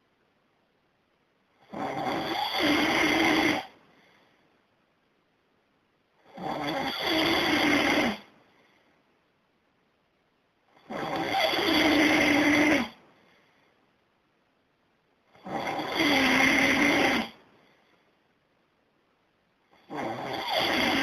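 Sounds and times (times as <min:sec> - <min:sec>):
person snoring: 0:01.6 - 0:03.8, 0:06.2 - 0:08.3, 0:10.8 - 0:13.0, 0:15.3 - 0:17.4, 0:19.8 - 0:21.0.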